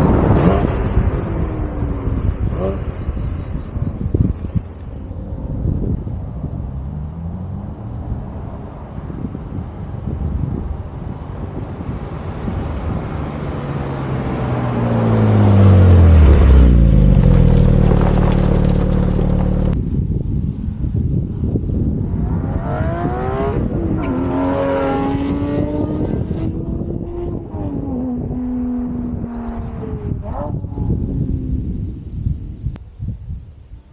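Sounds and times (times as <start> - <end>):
sports car exhaust revving: 14.8 - 19.8.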